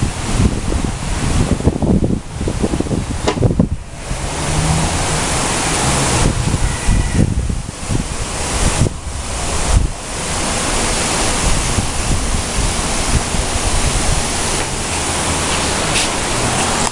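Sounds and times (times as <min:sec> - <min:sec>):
storm wind buffeting microphone: 0:00.0 - 0:16.9.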